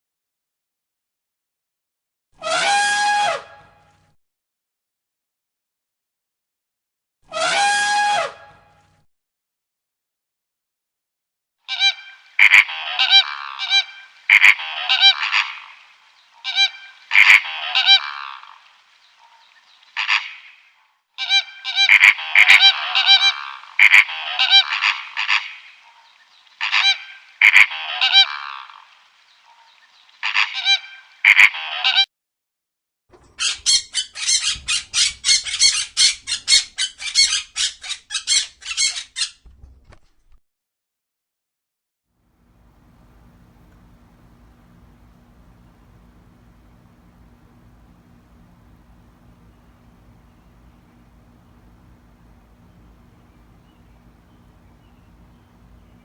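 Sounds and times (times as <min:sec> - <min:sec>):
bird honking calls: 0:11.7 - 0:15.8, 0:16.4 - 0:18.5, 0:21.2 - 0:25.8, 0:26.6 - 0:28.6, 0:30.2 - 0:32.1, 0:33.4 - 0:39.3, 0:42.5 - 0:56.0.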